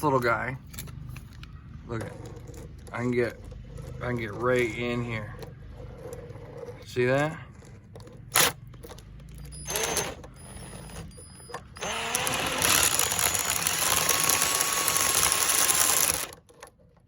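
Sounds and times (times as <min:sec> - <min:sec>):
drill grinding metal: 0:09.7 - 0:10.2, 0:11.8 - 0:16.4.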